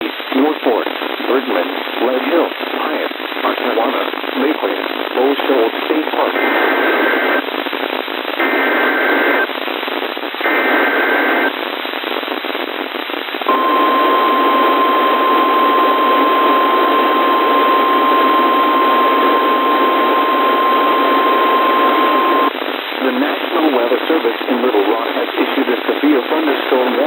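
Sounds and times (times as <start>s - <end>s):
radio static hiss: 0.0s - 27.0s
buzzy digital data bursts: 8.4s - 9.5s, 10.4s - 11.5s
steady warning alarm tone: 13.5s - 22.5s.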